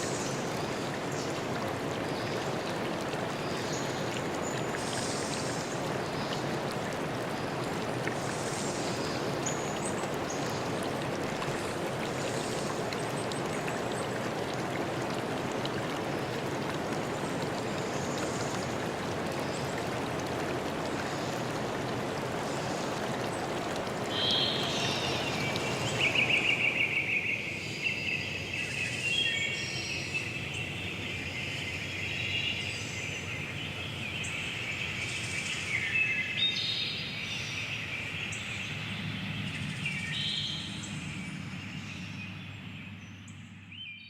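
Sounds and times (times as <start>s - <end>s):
running water: 0.0s - 42.0s
songbirds singing and chirping: 23.8s - 44.0s.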